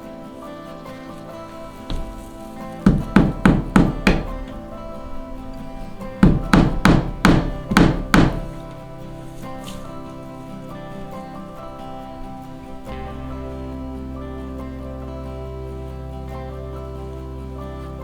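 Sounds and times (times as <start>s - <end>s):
guitar music: 0.0s - 18.0s
hammer blows: 1.8s - 5.0s, 5.8s - 9.9s.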